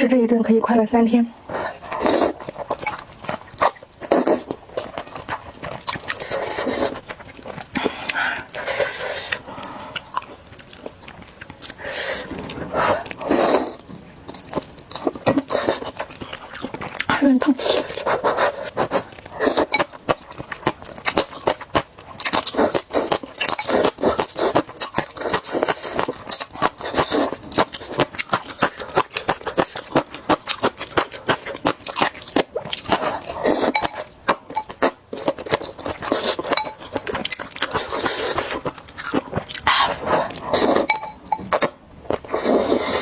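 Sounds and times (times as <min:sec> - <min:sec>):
wet chewing: 0:01.4 - 0:43.0
person slurping noodles: 0:01.5 - 0:02.5, 0:11.7 - 0:13.9, 0:39.6 - 0:40.9, 0:42.2 - 0:43.0.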